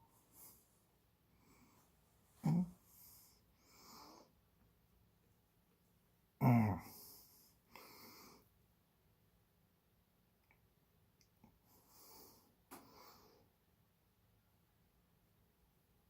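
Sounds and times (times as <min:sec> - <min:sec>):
soft breaths: 0:00.0 - 0:04.6, 0:06.8 - 0:08.6, 0:11.4 - 0:13.7
man grunting: 0:02.4 - 0:02.8, 0:06.4 - 0:07.2.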